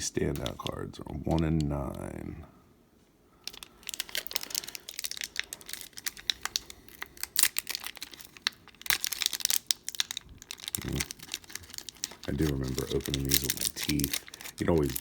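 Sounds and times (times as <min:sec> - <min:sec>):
wrapper crinkling and tearing: 0:03.4 - 0:15.0.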